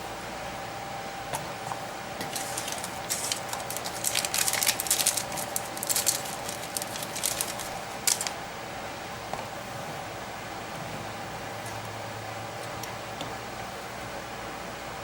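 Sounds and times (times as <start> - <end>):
small parts clicking and rustling: 2.3 - 8.3.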